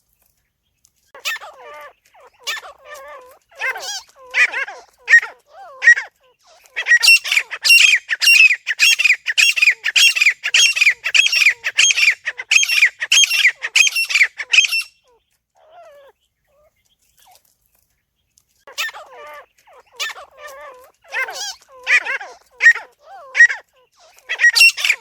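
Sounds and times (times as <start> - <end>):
bird calling shrill repeated notes: 1.2 - 17.4, 18.7 - 25.0
low wavering bird call: 6.8 - 15.1, 24.3 - 25.0.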